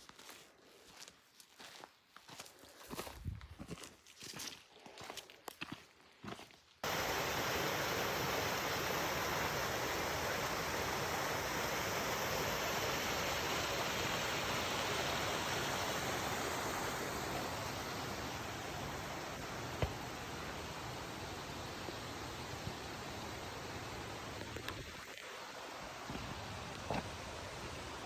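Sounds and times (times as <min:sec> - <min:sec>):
footsteps on trail: 0:00.0 - 0:06.8, 0:17.3 - 0:20.7, 0:26.0 - 0:27.8.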